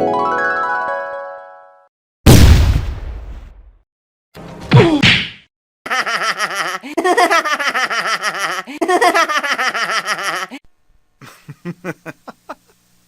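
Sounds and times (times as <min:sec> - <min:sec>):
person laughing: 0:05.9 - 0:12.8.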